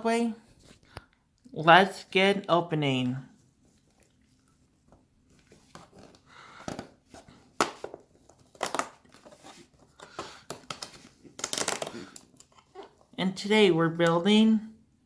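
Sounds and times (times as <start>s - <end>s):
wrapping crinkling: 7.2s - 13.1s.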